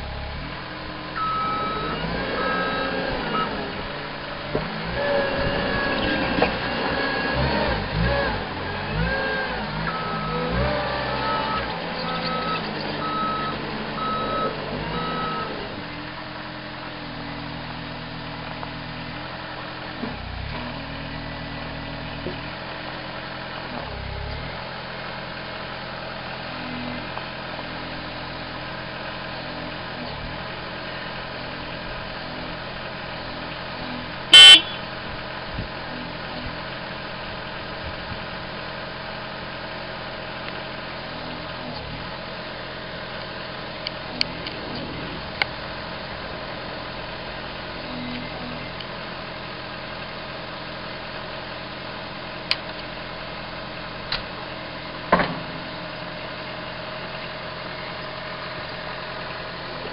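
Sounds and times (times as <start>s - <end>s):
loader diesel engine running: 0.0s - 59.9s
back-up alarm beeping: 1.2s - 3.6s, 11.3s - 15.5s, 34.4s - 34.8s.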